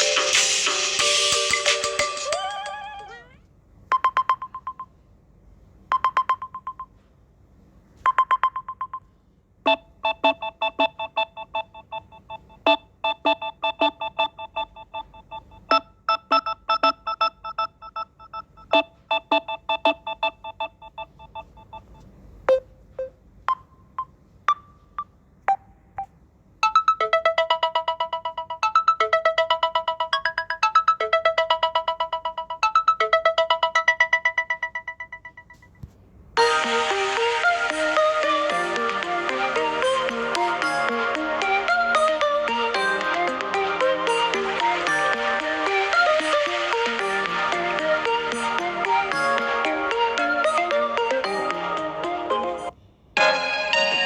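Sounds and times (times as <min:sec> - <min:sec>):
phone ringtone chime: 0:00.0 - 0:03.2, 0:26.6 - 0:35.8
plucked electronic melody: 0:00.0 - 0:03.2, 0:36.4 - 0:52.7
bright fast ringtone melody: 0:00.0 - 0:03.4, 0:09.7 - 0:21.9, 0:26.6 - 0:35.8, 0:36.4 - 0:54.0.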